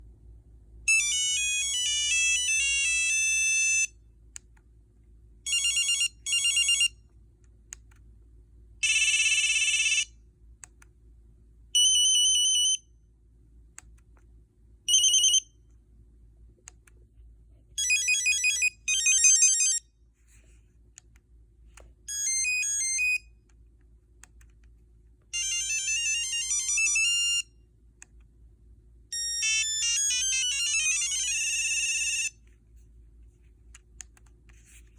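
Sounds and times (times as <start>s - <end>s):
phone ringtone beeping melodies: 0.9s - 3.9s, 5.5s - 6.9s, 17.8s - 19.8s, 22.1s - 23.2s, 25.4s - 27.4s, 29.2s - 32.3s.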